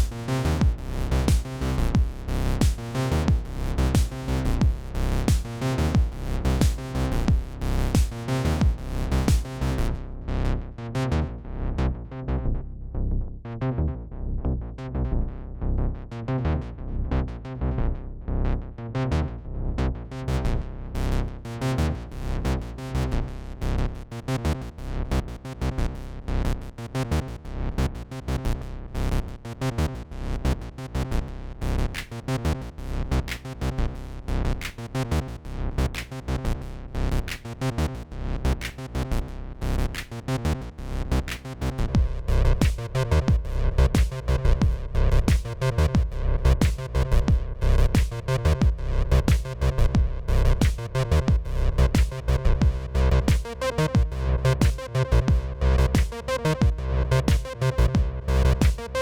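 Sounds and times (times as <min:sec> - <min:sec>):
synth and hi-hat sounds: 0:00.0 - 0:09.6, 0:41.3 - 0:47.4, 0:48.0 - 0:59.0
acid techno music: 0:00.0 - 0:09.7, 0:42.0 - 0:47.4, 0:48.0 - 0:59.0
steady kick drum pulse: 0:00.0 - 0:09.8, 0:42.0 - 0:59.0.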